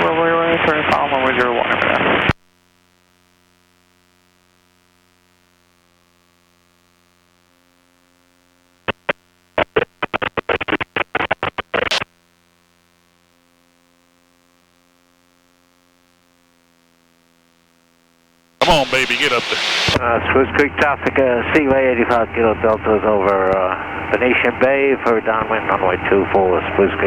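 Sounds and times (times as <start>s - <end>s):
faint engine hum over radio: 0.0s - 17.8s, 18.6s - 27.0s
choppy radio bursts: 8.9s - 12.0s, 18.6s - 27.0s.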